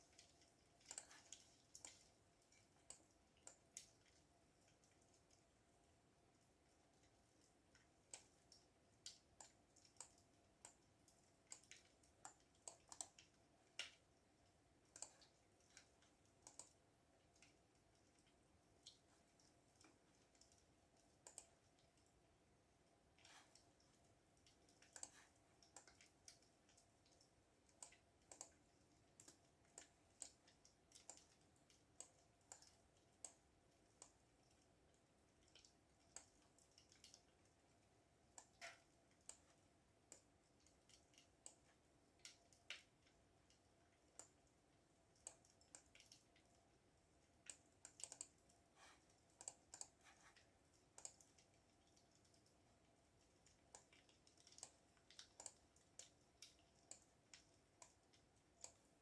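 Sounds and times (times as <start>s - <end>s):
typing on computer keyboard: 9.2s - 13.3s, 47.5s - 48.4s.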